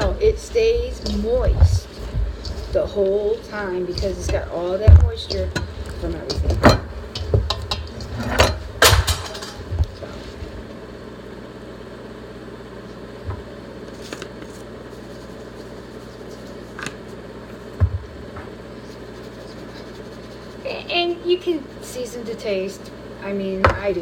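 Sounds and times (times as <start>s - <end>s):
steady mechanical hum: 0.0s - 24.0s
cooking utensils clattering: 2.9s - 9.8s.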